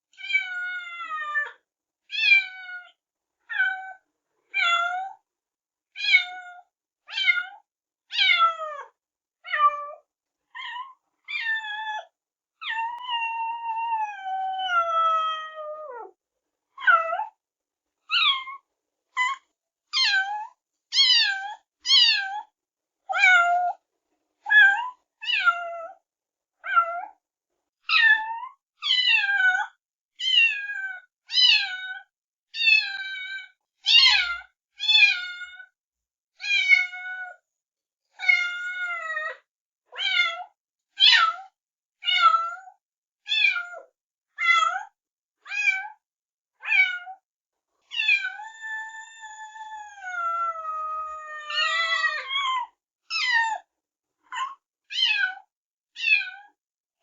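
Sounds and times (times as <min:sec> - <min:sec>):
kittens meowing: 0:47.9 - 0:53.4.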